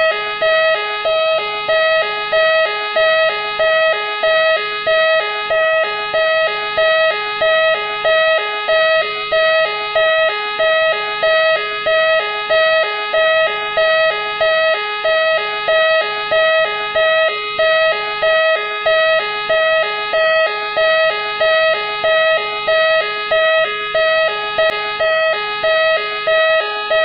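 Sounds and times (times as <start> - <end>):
two-tone police siren: 0.0 - 27.0.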